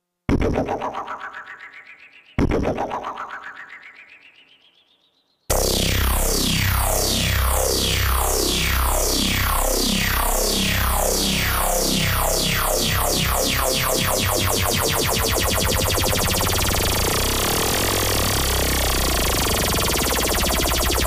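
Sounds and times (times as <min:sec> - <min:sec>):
low synthesizer drone: 0:05.5 - 0:21.0
synthesizer falling sweeps: 0:05.5 - 0:21.0.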